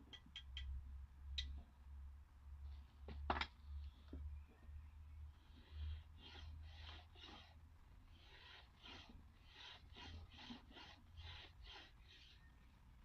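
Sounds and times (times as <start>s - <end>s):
hand tool rubbing wood: 5.4s - 12.6s.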